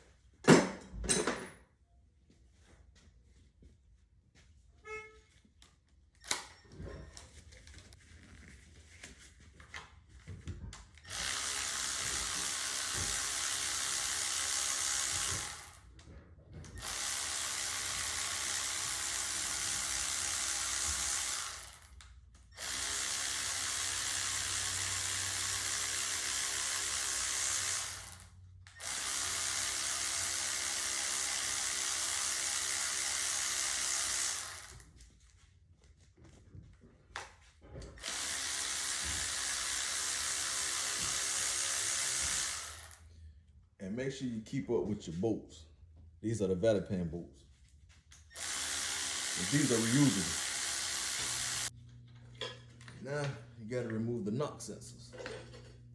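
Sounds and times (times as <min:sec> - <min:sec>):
power tool running: 0:11.0 - 0:15.9, 0:16.7 - 0:35.0, 0:37.9 - 0:43.1, 0:48.3 - 0:51.8.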